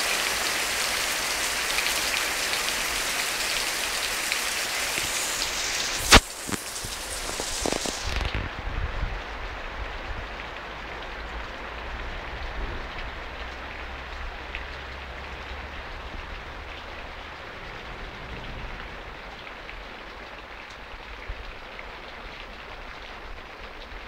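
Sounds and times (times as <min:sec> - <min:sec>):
steady rain: 0:00.0 - 0:24.0
low thunder rumble: 0:17.6 - 0:19.2.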